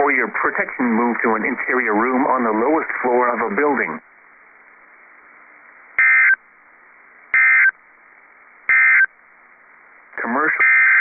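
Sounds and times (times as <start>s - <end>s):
faint radio hiss: 0.0s - 11.0s
digital data tone bursts: 6.0s - 6.4s, 7.3s - 7.8s, 8.7s - 9.1s, 10.6s - 11.0s.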